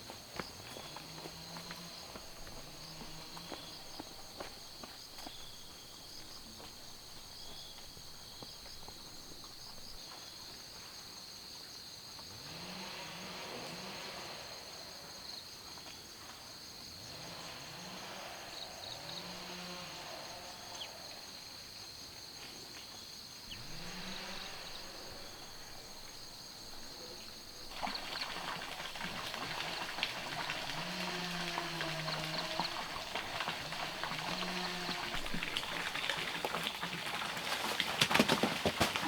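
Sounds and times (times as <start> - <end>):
insects chirring: 0.0 - 39.0
low rising animal calls: 23.5 - 36.3.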